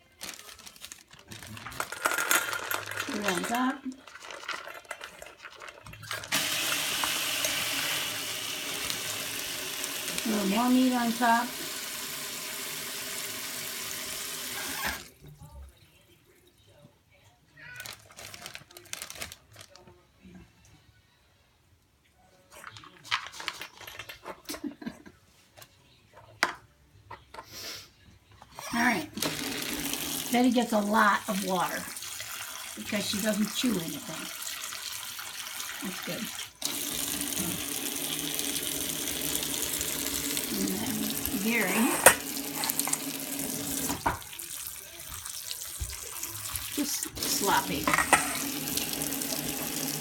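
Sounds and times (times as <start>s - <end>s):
kitchen tap water running: 6.0s - 15.2s, 28.8s - 50.0s.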